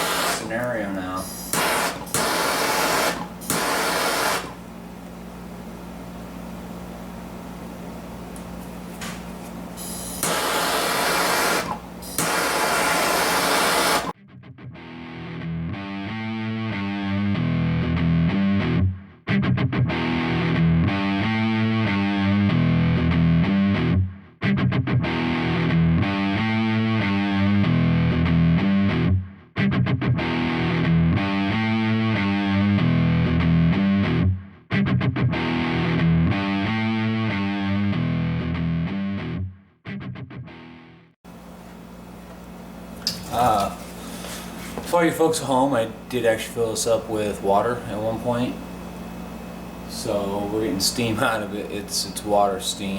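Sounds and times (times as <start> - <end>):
loud even hiss: 0.0 - 0.5, 1.4 - 4.6
rock music with electric guitar: 14.2 - 41.1.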